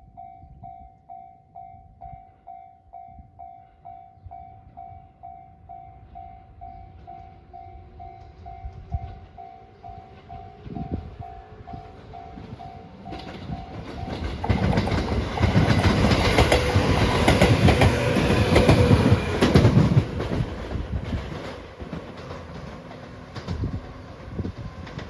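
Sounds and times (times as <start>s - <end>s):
crossing bell dinging: 0.0s - 19.7s
train wheels clacking on rails: 7.0s - 25.0s.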